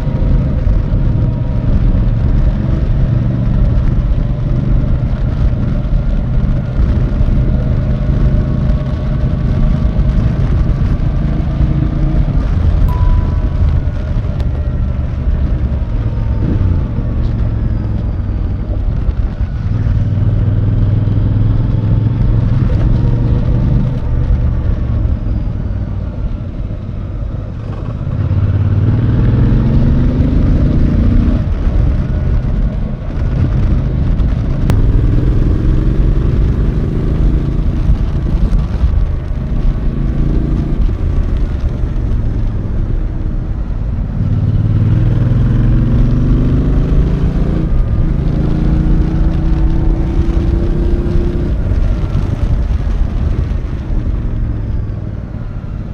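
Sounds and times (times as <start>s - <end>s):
motorcycle engine revving: 27.1s - 55.9s.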